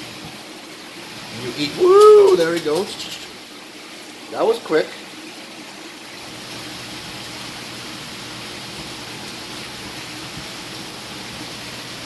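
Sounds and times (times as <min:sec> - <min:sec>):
water rushing through pumps: 0:00.0 - 0:12.0.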